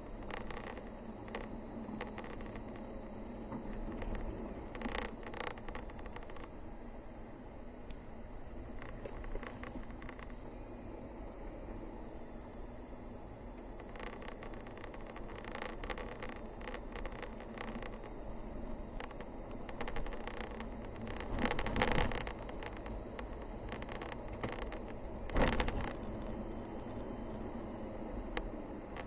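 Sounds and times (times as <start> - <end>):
small rattles and clicks: 0.0 - 6.6, 8.7 - 10.4, 13.6 - 18.2, 18.9 - 27.1, 28.3 - 29.0
vehicle road noise: 0.0 - 29.0
vehicle bumps: 19.7 - 26.2.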